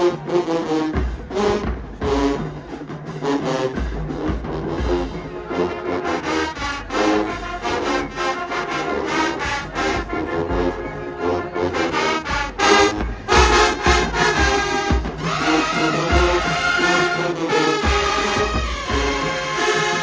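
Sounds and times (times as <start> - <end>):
brass section playing chords: 0.0 - 20.0.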